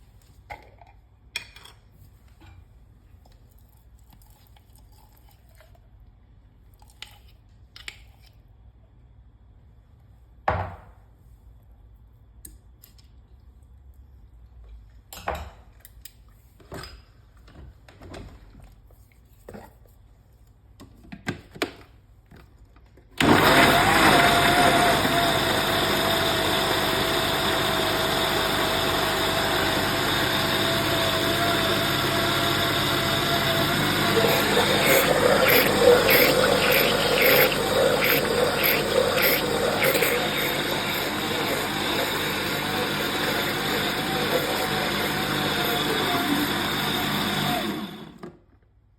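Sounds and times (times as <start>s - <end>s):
electric blender running: 23.2s - 48.2s.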